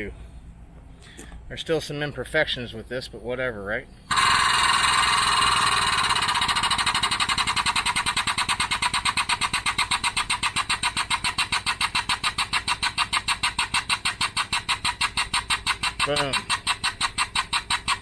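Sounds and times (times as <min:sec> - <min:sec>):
hydraulic press pump pulsing: 0:04.1 - 0:18.0.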